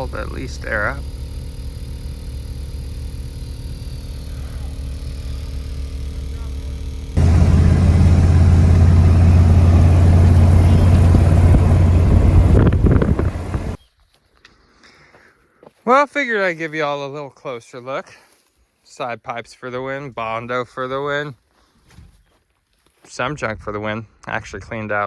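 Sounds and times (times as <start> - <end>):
truck engine running: 0.0 - 13.8
road rumble: 7.2 - 13.8.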